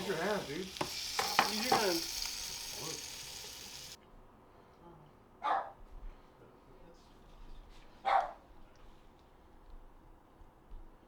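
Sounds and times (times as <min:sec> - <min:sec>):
dog barking: 0:05.4 - 0:05.8, 0:08.0 - 0:08.4.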